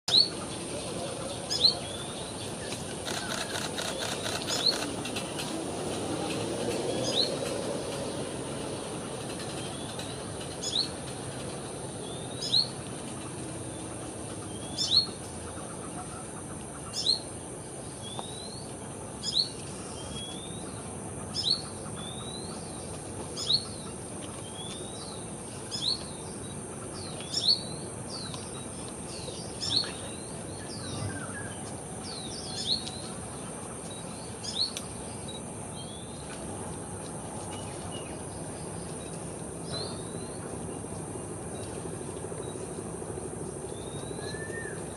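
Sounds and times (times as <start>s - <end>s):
bird chirping: 2.8s - 4.9s.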